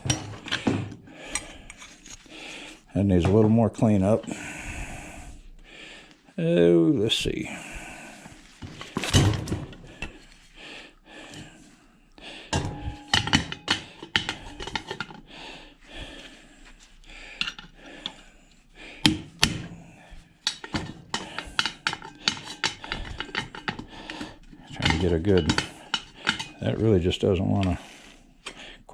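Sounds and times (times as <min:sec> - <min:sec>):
hand tools clanking on metal: 0:00.0 - 0:02.2, 0:12.5 - 0:15.2, 0:17.3 - 0:18.2, 0:20.4 - 0:27.8
metal scraping: 0:12.6 - 0:15.2, 0:20.4 - 0:27.9.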